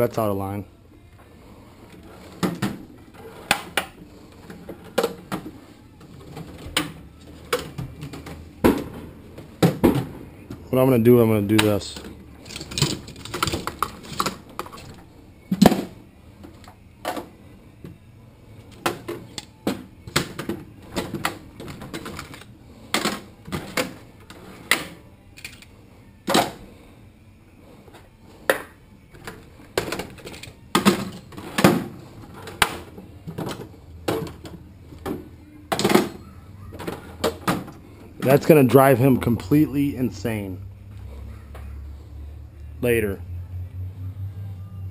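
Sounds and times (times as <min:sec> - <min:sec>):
metal hand tools clattering: 0:11.6 - 0:14.9.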